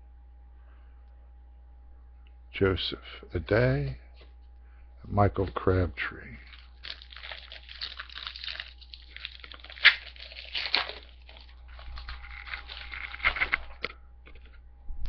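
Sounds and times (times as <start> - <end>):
card pack wrapper crinkling: 6.4 - 14.6.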